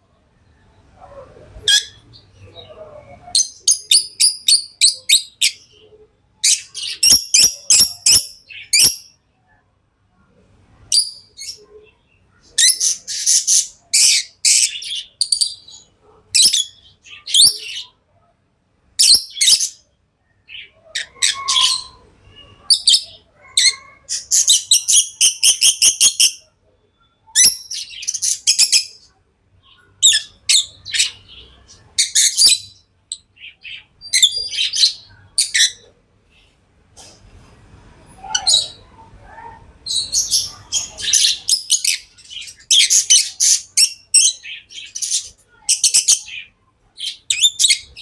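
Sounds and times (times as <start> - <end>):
lovebirds chirping: 0.6 - 9.2, 19.0 - 36.5, 38.2 - 48.0.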